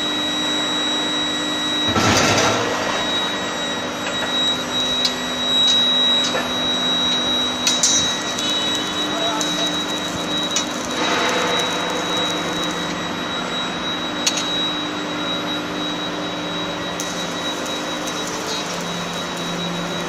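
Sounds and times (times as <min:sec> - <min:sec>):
high whine: 0:00.0 - 0:20.0
machinery din: 0:01.9 - 0:03.2.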